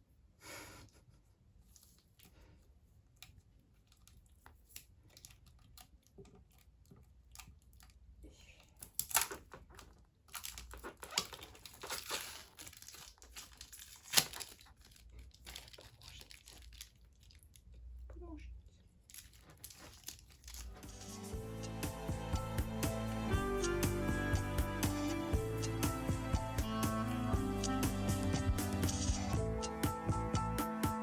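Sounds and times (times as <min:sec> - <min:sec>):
plastic packaging crinkling: 0:09.0 - 0:17.8, 0:19.0 - 0:21.3.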